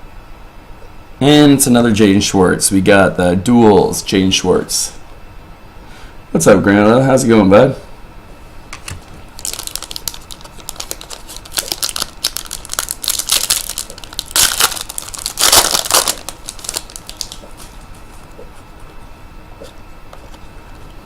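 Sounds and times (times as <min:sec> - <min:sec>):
plastic packaging crinkling: 0:08.8 - 0:18.4.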